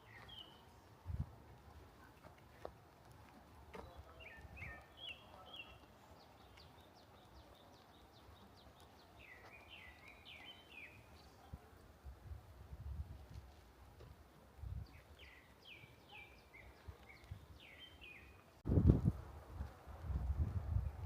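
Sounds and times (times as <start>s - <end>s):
birds chirping: 0.0s - 0.9s, 3.5s - 11.8s, 14.8s - 18.6s.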